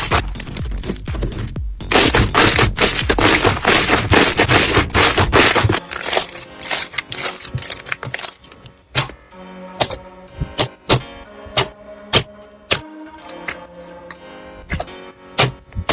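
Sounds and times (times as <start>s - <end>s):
crunchy slime crackling and popping: 0.0s - 8.7s
soft music: 0.0s - 15.9s.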